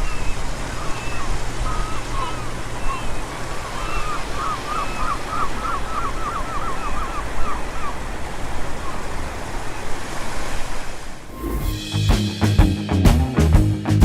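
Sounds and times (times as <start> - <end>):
bird calling repeated notes: 0.0 - 8.0
steady rushing outdoor noise: 0.0 - 11.8.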